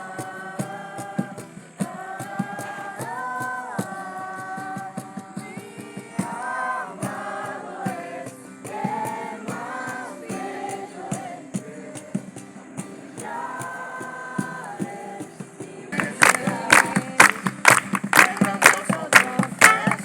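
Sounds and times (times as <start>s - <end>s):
sung vocals: 0.0s - 20.0s
steady beat: 14.4s - 20.0s.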